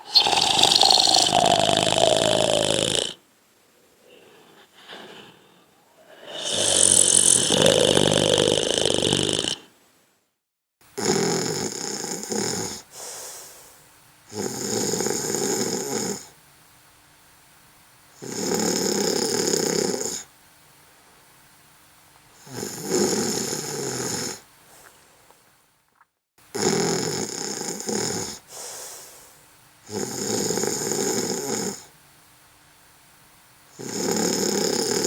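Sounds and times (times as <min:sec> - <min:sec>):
person snoring: 0:00.0 - 0:03.2, 0:04.0 - 0:09.8, 0:11.0 - 0:13.1, 0:14.3 - 0:16.3, 0:18.2 - 0:20.3, 0:22.4 - 0:24.4, 0:26.6 - 0:28.4, 0:29.9 - 0:31.9, 0:33.8 - 0:35.0.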